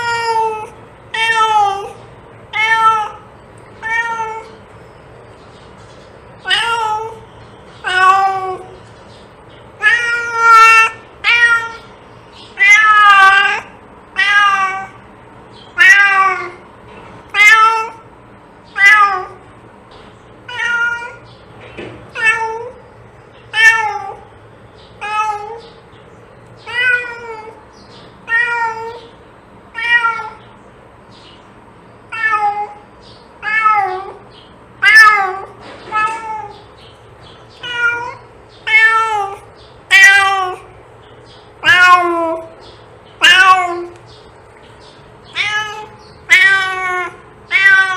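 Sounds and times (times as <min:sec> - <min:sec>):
cat meowing: 0:00.0 - 0:04.6, 0:06.4 - 0:07.2, 0:07.8 - 0:08.8, 0:09.8 - 0:11.9, 0:12.6 - 0:15.0, 0:15.7 - 0:16.6, 0:17.3 - 0:18.0, 0:18.7 - 0:19.4, 0:20.5 - 0:21.3, 0:22.1 - 0:22.8, 0:23.5 - 0:24.3, 0:25.0 - 0:25.7, 0:26.6 - 0:27.6, 0:28.2 - 0:29.1, 0:29.7 - 0:30.4, 0:32.1 - 0:32.8, 0:33.4 - 0:34.2, 0:34.8 - 0:36.6, 0:37.6 - 0:40.8, 0:41.6 - 0:42.6, 0:43.2 - 0:44.0, 0:45.3 - 0:47.9.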